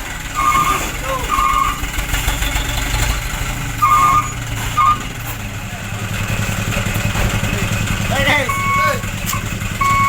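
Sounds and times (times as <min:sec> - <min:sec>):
short electronic beeps: 0:08.5 - 0:10.0.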